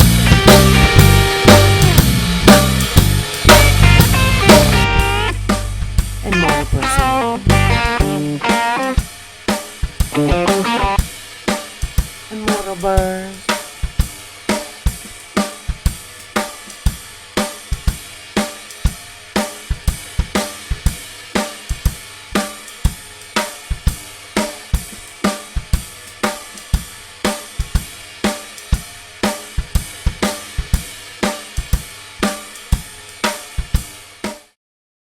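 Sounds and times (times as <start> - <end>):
instrumental band music: 0.0 - 20.8
drum kit playing a steady beat: 0.0 - 34.6.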